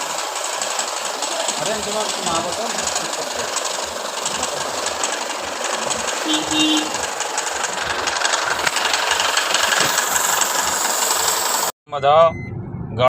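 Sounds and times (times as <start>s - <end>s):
engine running with clatter: 0.0s - 11.7s
double beep: 11.9s - 13.0s.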